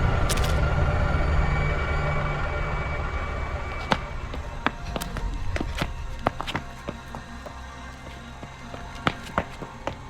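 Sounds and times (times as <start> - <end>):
low rumbling drone: 0.0 - 9.0
sharp click: 0.3 - 0.7.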